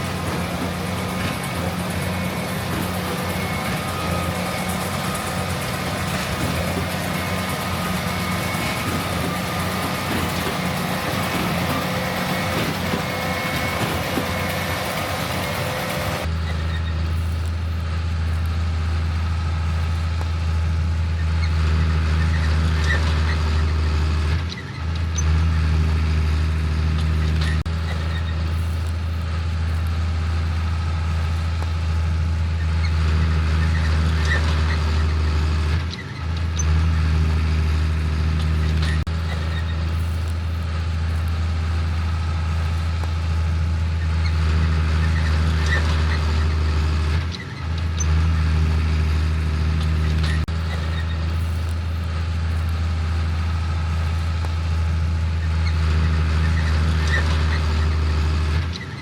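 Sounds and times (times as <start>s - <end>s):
diesel engines droning: 0.0s - 59.0s.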